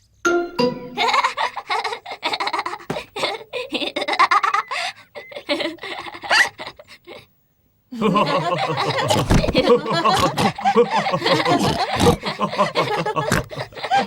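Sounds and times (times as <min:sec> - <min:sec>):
cartoon characters laughing: 0:00.9 - 0:07.2, 0:08.0 - 0:14.0.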